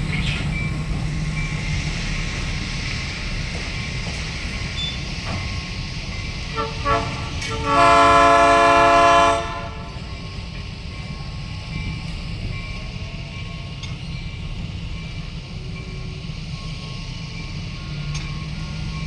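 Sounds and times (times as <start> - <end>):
train rumble: 0.0 - 19.0
locomotive air horn: 6.5 - 10.1.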